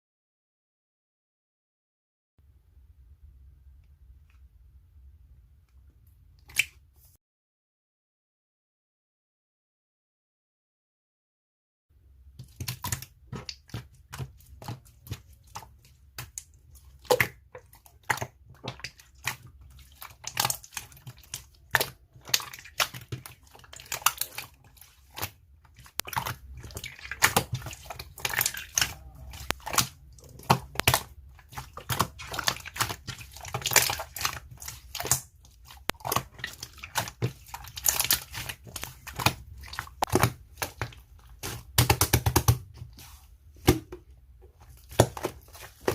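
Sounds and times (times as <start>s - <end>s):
slime being squished: 12.4s - 44.0s, 44.6s - 45.9s
air bubbles popping: 25.9s - 42.5s.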